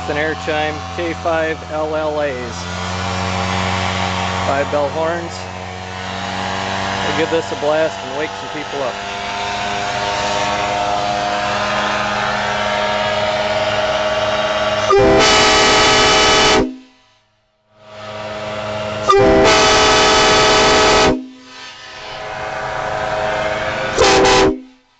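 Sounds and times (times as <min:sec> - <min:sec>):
train horn chord: 0:13.8 - 0:17.2, 0:17.9 - 0:21.6, 0:23.4 - 0:24.9.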